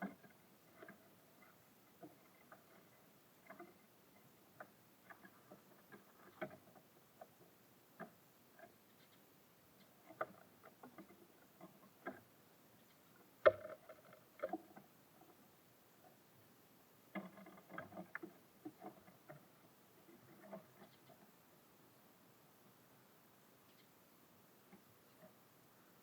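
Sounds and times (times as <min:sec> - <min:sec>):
birds pecking on feeder: 0:00.0 - 0:21.4.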